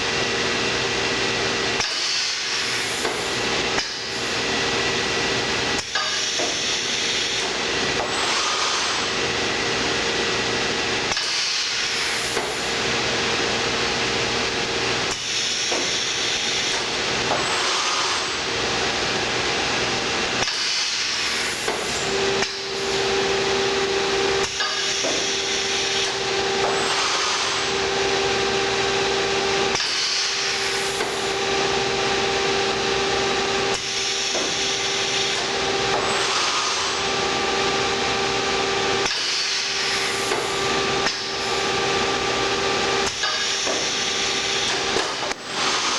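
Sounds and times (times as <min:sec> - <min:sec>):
pneumatic air hisses: 0:01.8 - 0:04.3, 0:05.8 - 0:09.2, 0:11.1 - 0:12.8, 0:15.1 - 0:18.5, 0:20.4 - 0:23.0, 0:24.4 - 0:27.7, 0:29.7 - 0:31.4, 0:33.7 - 0:37.0, 0:39.0 - 0:41.6, 0:43.0 - 0:45.9.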